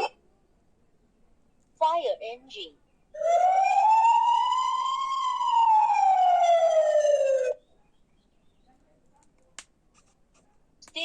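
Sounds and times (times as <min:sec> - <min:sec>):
fire engine siren wailing: 0:03.2 - 0:07.6.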